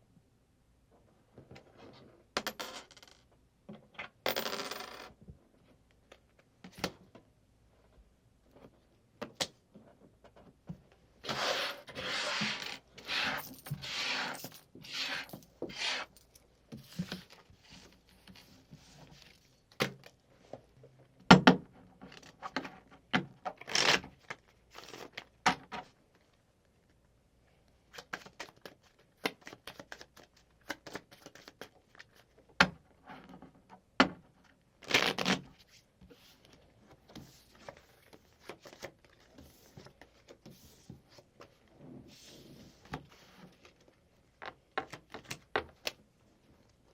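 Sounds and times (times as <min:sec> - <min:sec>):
cards clicking and sliding on table: 0:11.2 - 0:16.1
cards shuffling: 0:28.0 - 0:32.2, 0:36.3 - 0:41.2.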